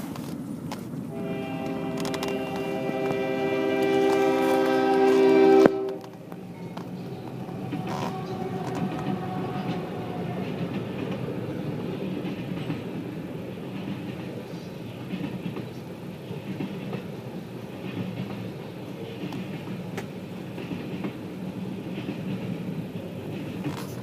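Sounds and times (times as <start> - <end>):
sharp clicks of train wheels: 0.0 - 24.0
train wheels rumbling on rail: 0.0 - 24.0.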